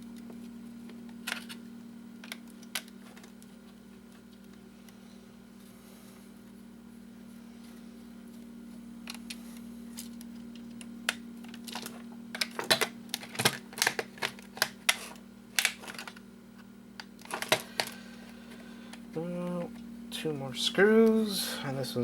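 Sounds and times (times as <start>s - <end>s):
steady low hum: 0.0s - 22.0s
plastic case clicks and clatter: 11.5s - 16.2s, 17.2s - 18.0s.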